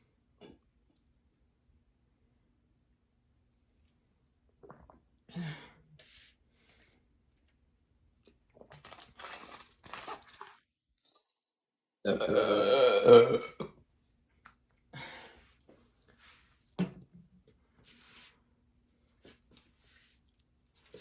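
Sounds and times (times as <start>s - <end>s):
woman belching loudly: 12.1s - 13.7s.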